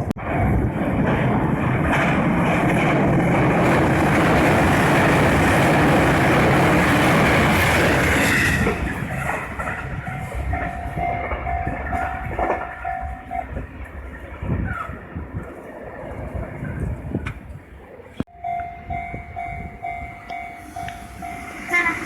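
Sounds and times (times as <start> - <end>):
train wheels clattering on rails: 0.0 - 17.4
level crossing alarm bell: 9.4 - 13.6, 18.3 - 22.0.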